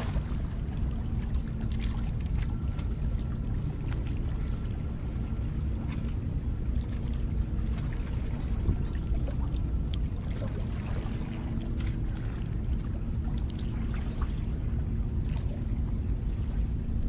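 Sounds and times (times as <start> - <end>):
water at the shore: 0.0 - 17.0
wind on microphone: 0.0 - 17.0
faint ticks: 9.4 - 10.1.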